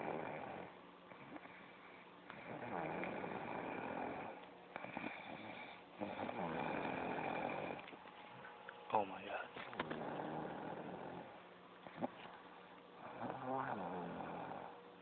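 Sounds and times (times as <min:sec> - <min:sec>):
woman snoring: 0:00.0 - 0:01.5, 0:02.4 - 0:07.8, 0:09.8 - 0:11.3, 0:13.0 - 0:14.7.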